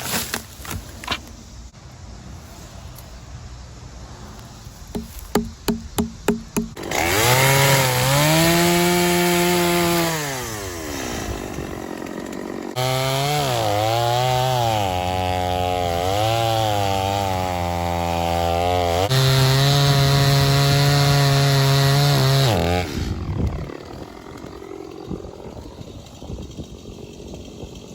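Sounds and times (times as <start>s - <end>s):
chainsaw cutting wood: 4.9s - 27.9s.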